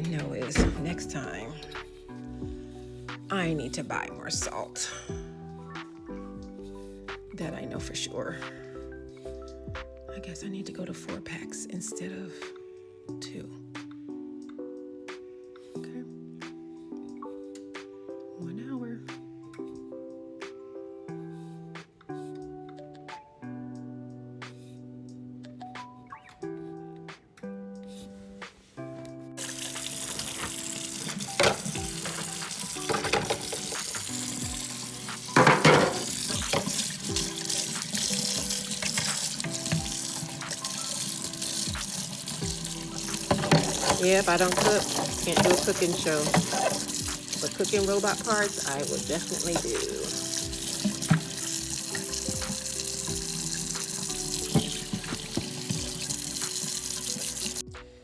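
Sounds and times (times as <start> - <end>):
background music with held notes: 0.0 - 58.0
tap water running into sink: 29.4 - 57.6
water splashing: 29.4 - 57.6.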